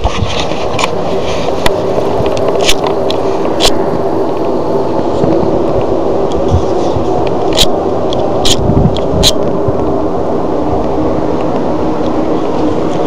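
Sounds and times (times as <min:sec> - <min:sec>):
rumbling drone in the sky: 0:00.0 - 0:13.0.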